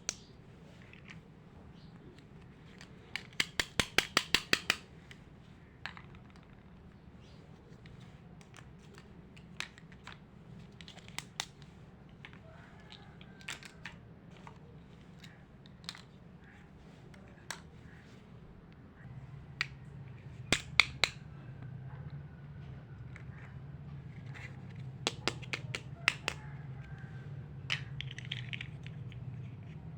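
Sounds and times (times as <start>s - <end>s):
plastic toy pieces clicking: 2.4s - 4.9s, 7.8s - 14.6s, 20.5s - 21.2s, 24.3s - 26.9s, 27.7s - 29.8s
low steady hum: 4.8s - 29.9s.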